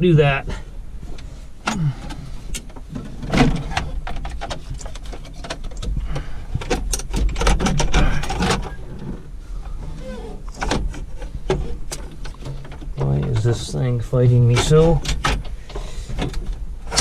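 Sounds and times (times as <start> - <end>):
low steady rumble: 0.0 - 17.0
gear lever metal clicks and clunks: 1.6 - 8.8, 14.4 - 17.0.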